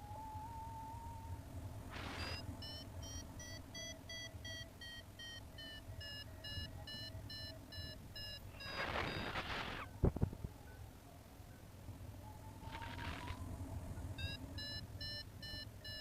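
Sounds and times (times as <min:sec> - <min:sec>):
variometer beeping: 0:02.1 - 0:09.8, 0:14.0 - 0:16.0
wind rumbling on microphone: 0:08.0 - 0:11.2, 0:11.8 - 0:14.2.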